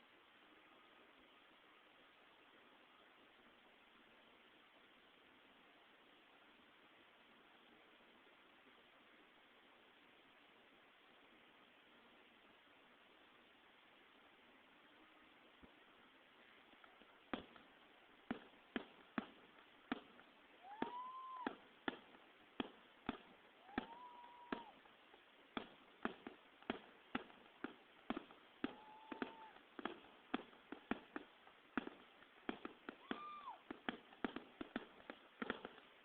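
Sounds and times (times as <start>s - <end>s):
fireworks rising tones: 16.4s - 36.0s
fireworks popping and banging: 16.7s - 36.0s.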